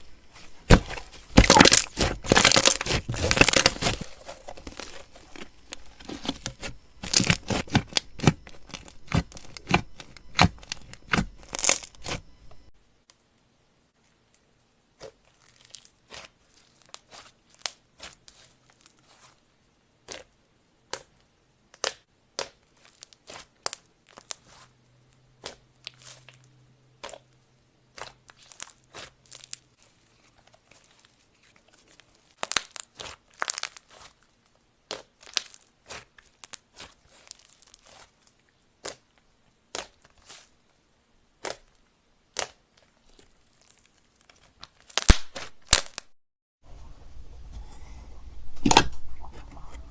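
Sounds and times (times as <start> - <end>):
crunchy slime crackling: 0.0 - 12.7, 42.3 - 46.1.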